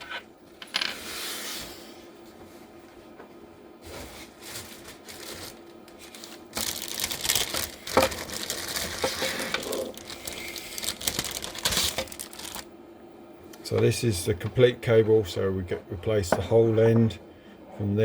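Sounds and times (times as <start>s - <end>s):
rustling and crinkling: 2.4s - 12.6s.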